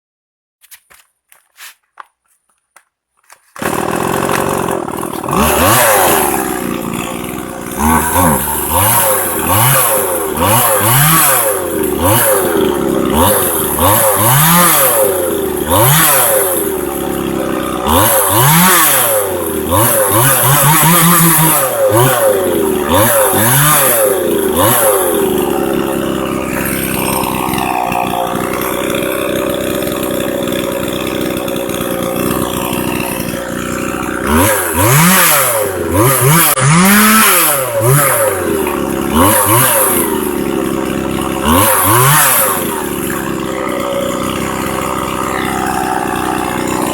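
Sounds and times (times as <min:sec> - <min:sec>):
chainsaw engine revving: 0:03.4 - 0:46.9.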